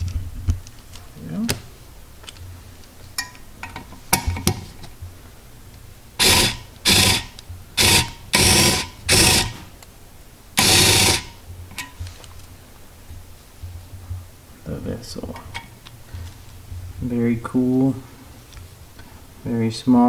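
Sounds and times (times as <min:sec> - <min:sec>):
small electric screwdriver motor: 0:06.2 - 0:09.7, 0:10.6 - 0:11.4.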